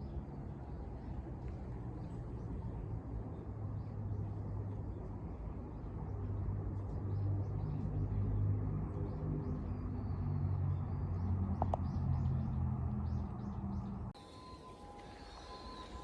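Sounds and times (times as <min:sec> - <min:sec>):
distant traffic rumble: 0:00.0 - 0:16.0
faint bird chirps: 0:14.2 - 0:16.0.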